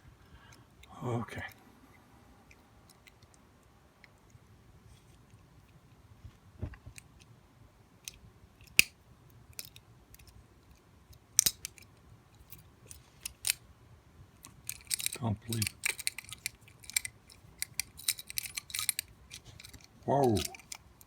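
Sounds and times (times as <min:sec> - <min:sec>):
lock picking clicks and scrapes: 0:08.0 - 0:13.6, 0:14.4 - 0:21.0.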